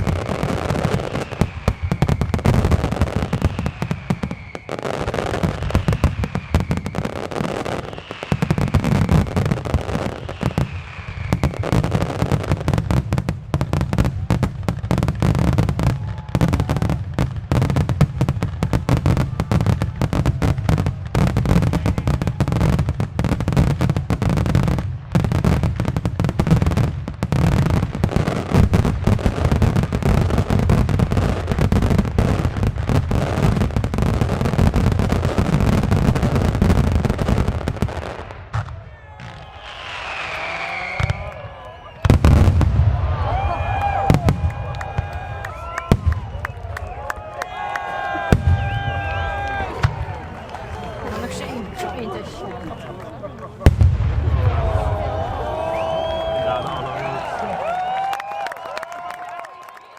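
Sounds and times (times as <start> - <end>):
falling firework whistles: 0.0 - 12.8, 37.1 - 47.0, 47.9 - 51.1, 53.6 - 58.9
fireworks bursting: 0.0 - 58.9.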